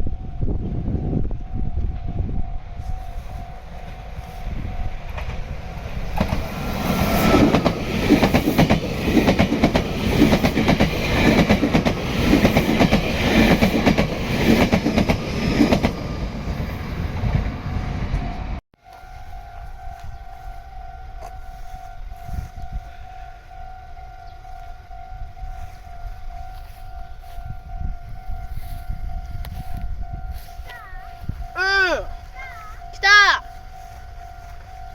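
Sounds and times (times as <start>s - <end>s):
level crossing alarm ringing: 1.4s - 5.8s, 17.7s - 34.9s
train wheels clattering: 4.8s - 16.1s.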